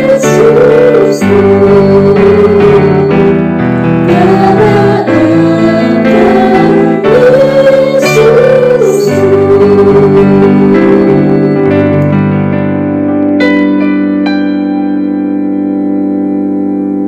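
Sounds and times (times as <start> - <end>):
person singing: 0.0 - 12.1
electric keyboard chords: 0.0 - 17.0.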